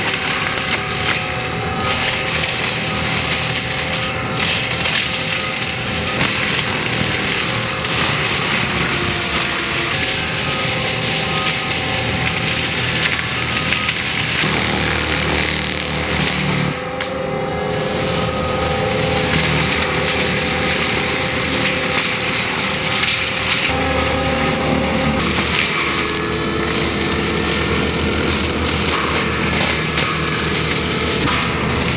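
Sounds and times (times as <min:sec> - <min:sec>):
machine engine and hydraulics: 0:00.0 - 0:31.9
mulcher crunching wood: 0:00.0 - 0:31.9.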